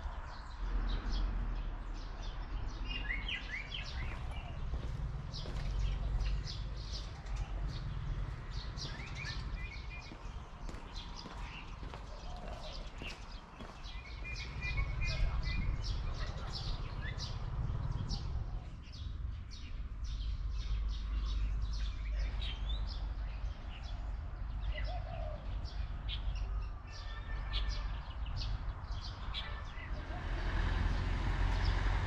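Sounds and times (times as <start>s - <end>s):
birds chirping: 0.0s - 32.0s
steady low rumble: 3.4s - 24.2s.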